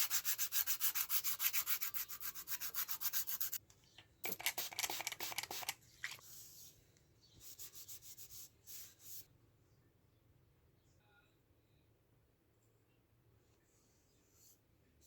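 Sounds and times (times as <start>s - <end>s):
sandpaper rubbing on plastic: 0.0s - 3.6s.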